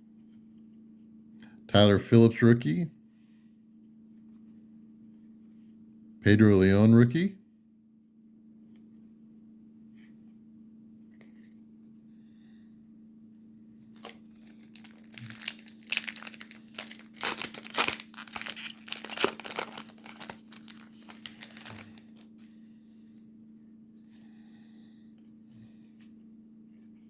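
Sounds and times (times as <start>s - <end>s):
foil wrapper tearing and crinkling: 13.9s - 22.3s.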